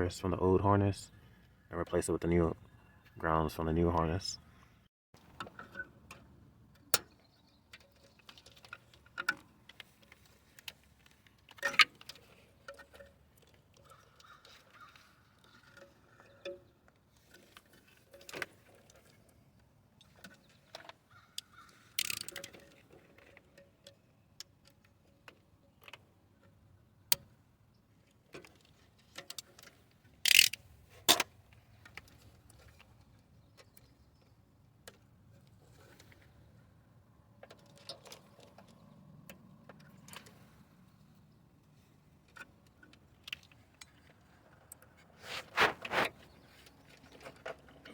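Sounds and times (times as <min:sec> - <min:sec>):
wrench and metal terminals clinking: 0:22.0 - 0:22.7, 0:30.2 - 0:31.2.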